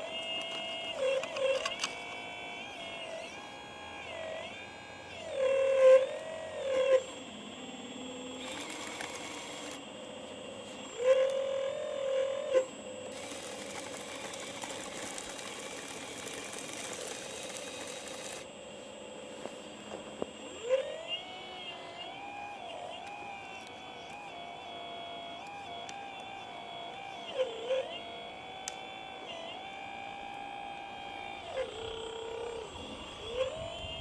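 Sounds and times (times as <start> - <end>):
electric motors whining: 0.0 - 34.0
small clicks: 0.1 - 2.2, 8.4 - 9.8.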